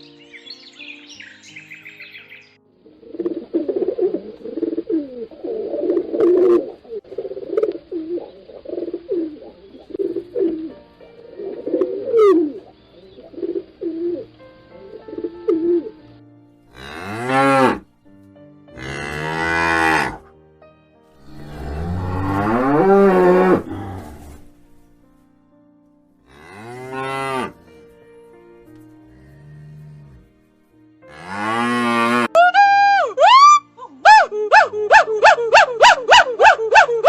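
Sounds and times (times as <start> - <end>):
cow mooing: 16.7 - 17.8, 18.8 - 20.3, 21.2 - 24.4, 26.3 - 27.6, 29.1 - 30.3, 31.1 - 32.4.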